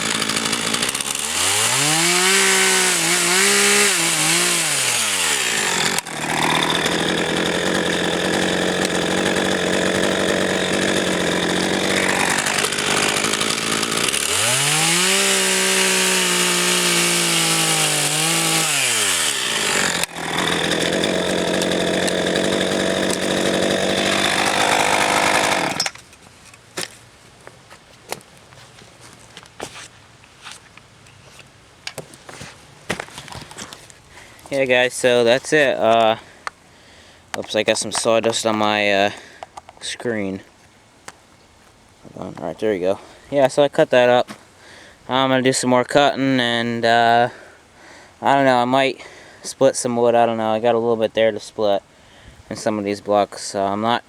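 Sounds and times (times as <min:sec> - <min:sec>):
chainsaw revving and sawing logs: 0:00.0 - 0:26.0.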